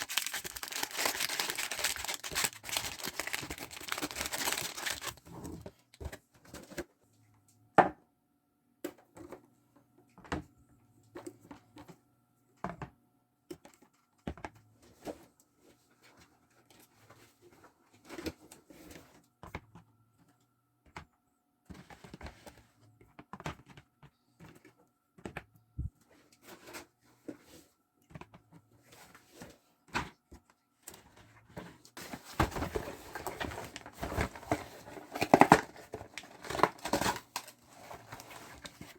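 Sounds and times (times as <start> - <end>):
packaging rustling: 0.0 - 6.8, 32.0 - 38.9.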